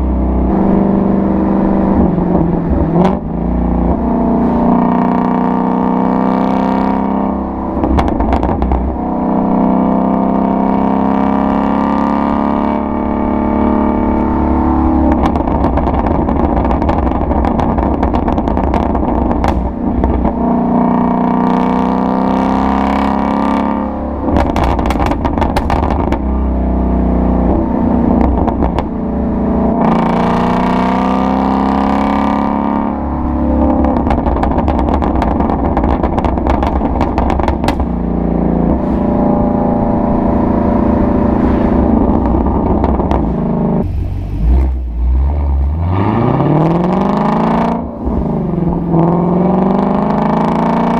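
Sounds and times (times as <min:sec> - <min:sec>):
loud car exhaust revving: 0:00.0 - 0:50.9
exhaust crackling pops: 0:07.8 - 0:09.0, 0:15.0 - 0:20.4, 0:24.3 - 0:26.5, 0:27.4 - 0:29.0, 0:33.3 - 0:45.0.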